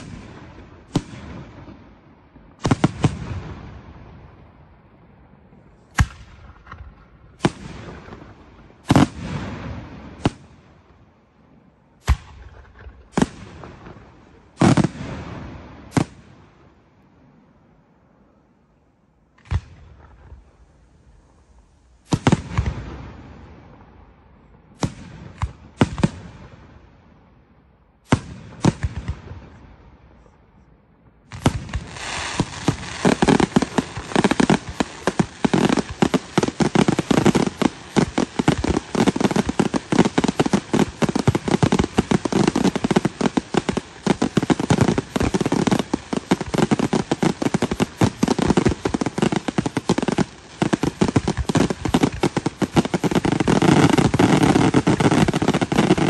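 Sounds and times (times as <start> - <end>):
rapid firework barrage: 5.8 - 10.9, 12.0 - 16.5, 21.4 - 23.7, 28.1 - 29.6, 31.3 - 56.0
firework shells bursting with crackle: 5.8 - 11.0, 31.2 - 56.0.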